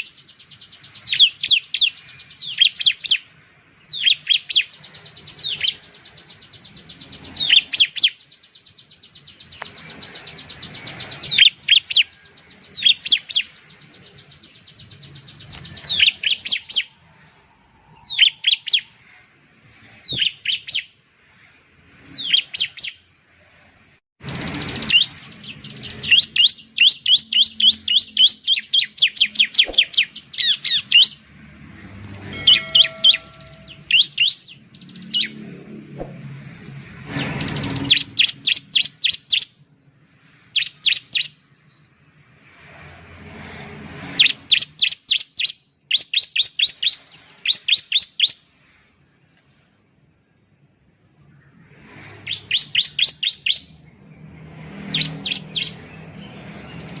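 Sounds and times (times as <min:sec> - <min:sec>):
bird singing high falling notes: 0:03.8 - 0:19.2, 0:24.2 - 0:36.0.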